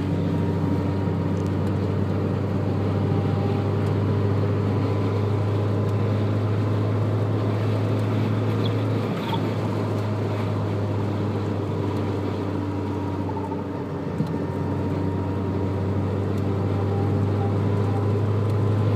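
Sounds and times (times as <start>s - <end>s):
car engine droning: 0.0s - 18.9s.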